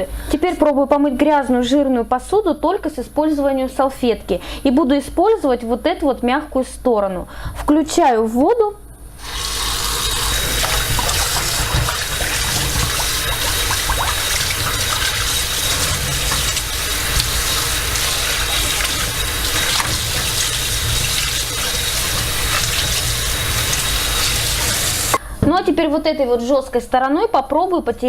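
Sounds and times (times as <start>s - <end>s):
tap water running into sink: 9.2s - 25.2s.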